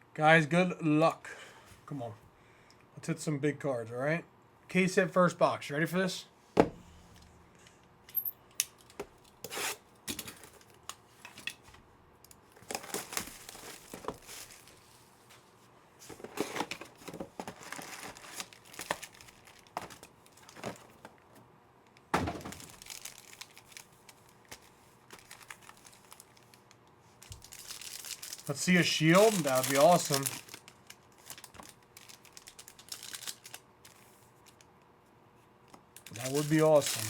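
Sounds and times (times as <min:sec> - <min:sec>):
wrappers tearing and crinkling: 0:12.5 - 0:15.1, 0:16.2 - 0:21.0, 0:22.3 - 0:34.7, 0:36.0 - 0:37.0.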